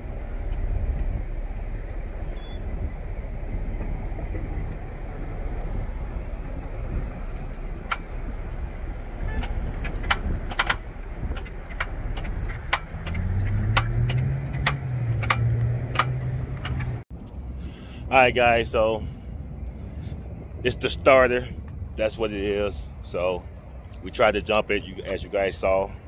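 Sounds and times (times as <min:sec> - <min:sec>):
low steady drone: 0:00.0 - 0:18.3.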